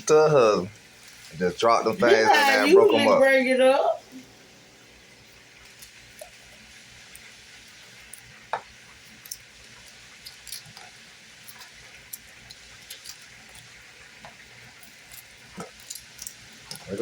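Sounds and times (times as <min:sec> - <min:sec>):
faint steady hiss: 0:00.0 - 0:17.0
frozen meat clicking in pan: 0:05.5 - 0:17.0.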